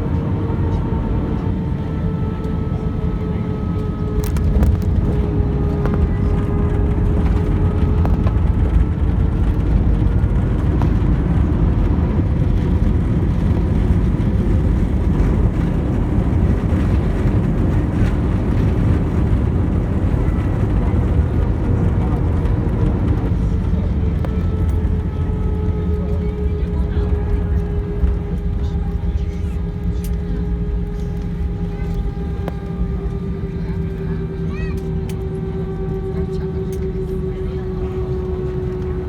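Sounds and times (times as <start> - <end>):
aircraft cabin rumble: 0.0 - 39.0
faint engine whine: 0.0 - 39.0.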